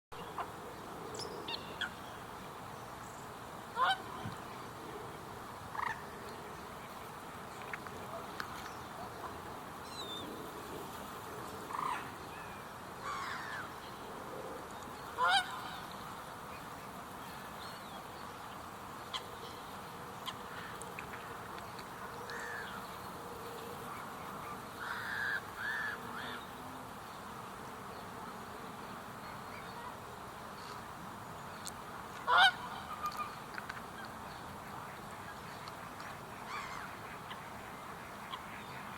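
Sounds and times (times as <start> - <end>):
steady background hiss: 0.2 - 38.9
moorhen calling: 32.2 - 33.4.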